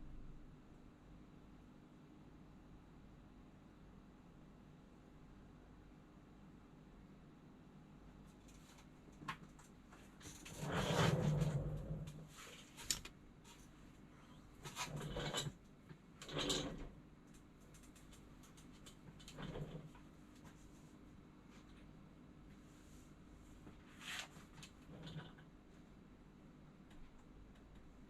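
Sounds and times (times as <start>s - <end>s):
tools rustling and scraping: 10.1s - 15.6s.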